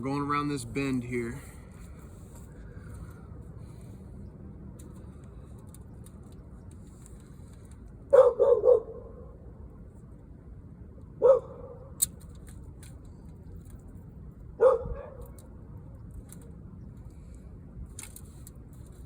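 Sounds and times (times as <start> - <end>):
dog barking: 8.1 - 9.1, 11.2 - 11.8, 14.6 - 15.2.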